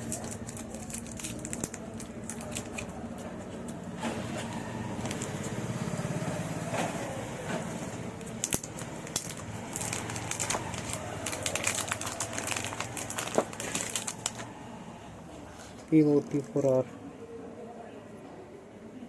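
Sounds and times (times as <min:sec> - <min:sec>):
packaging crinkling: 0:00.0 - 0:05.8, 0:08.0 - 0:14.5.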